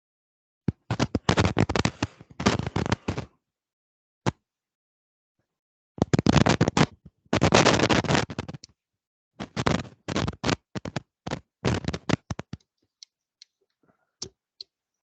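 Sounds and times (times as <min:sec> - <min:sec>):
scratchy crackling noise: 0:00.7 - 0:03.4, 0:06.0 - 0:08.8, 0:09.4 - 0:14.8.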